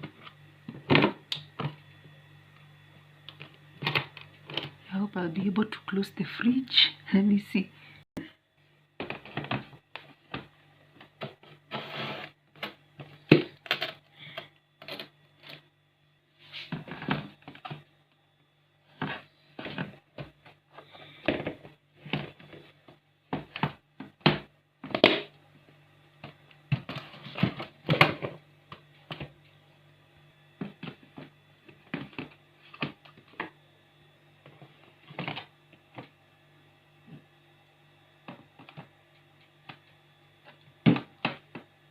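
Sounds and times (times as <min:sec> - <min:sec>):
plastic containers clattering: 0:09.0 - 0:11.7.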